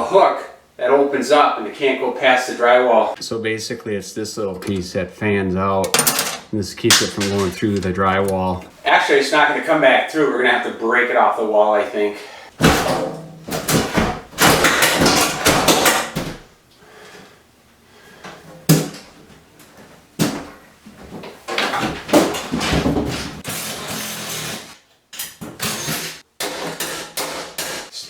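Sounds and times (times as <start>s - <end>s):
microwave being wrenched off wall: 12.6s - 16.4s.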